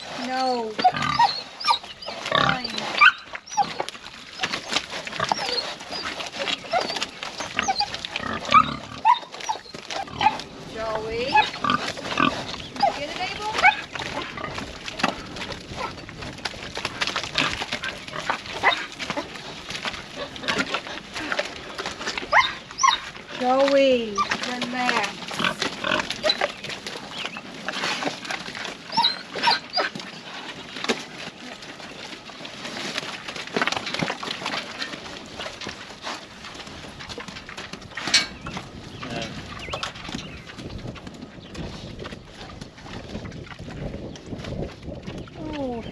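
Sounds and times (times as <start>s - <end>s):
pigs squealing and grunting: 0.0s - 23.6s, 24.2s - 37.3s
dog whining: 1.2s - 4.6s, 5.2s - 10.4s, 22.3s - 23.1s, 28.9s - 30.0s.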